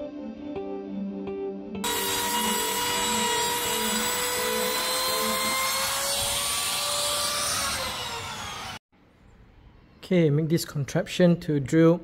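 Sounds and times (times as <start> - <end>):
wood router cutting wood: 1.8 - 8.8.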